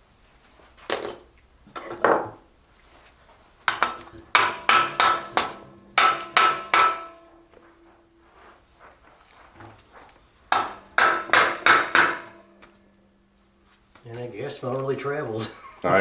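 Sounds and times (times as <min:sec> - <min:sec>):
hammer striking metal: 0:03.7 - 0:08.0, 0:10.5 - 0:13.3.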